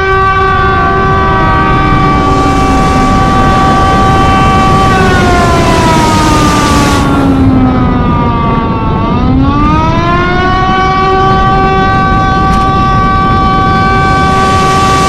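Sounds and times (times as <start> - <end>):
warning siren wailing: 0.0 - 15.0
rough noise: 1.1 - 7.4, 14.0 - 15.0.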